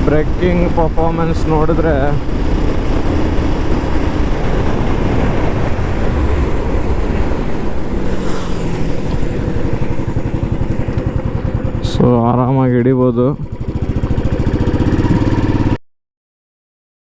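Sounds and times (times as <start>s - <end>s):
wind rushing: 0.0s - 12.0s
motorcycle engine running: 0.0s - 15.8s.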